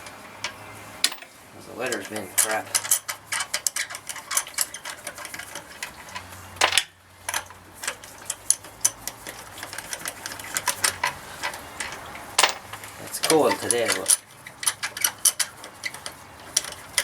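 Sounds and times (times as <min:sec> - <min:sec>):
metal clank: 0:11.8 - 0:12.8.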